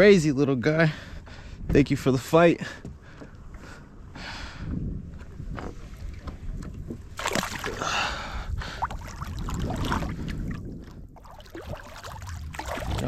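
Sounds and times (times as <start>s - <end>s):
wind rumbling on microphone: 0.9s - 13.0s
water sloshing beside boat: 2.6s - 13.0s.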